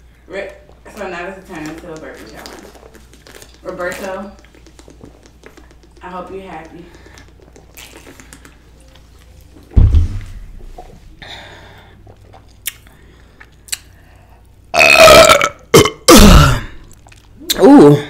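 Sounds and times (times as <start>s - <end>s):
low thump: 9.7s - 10.7s
woman burping loudly: 14.7s - 16.9s.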